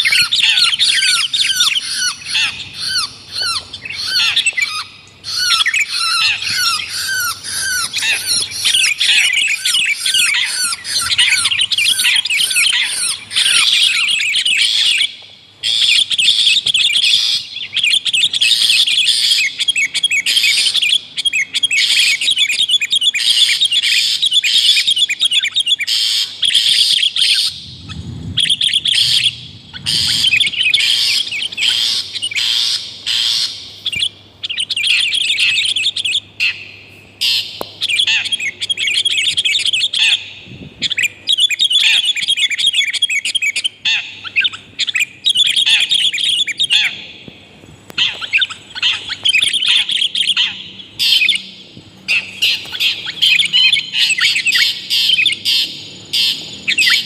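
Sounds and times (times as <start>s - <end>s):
shrike chattering: 27.1s - 33.5s.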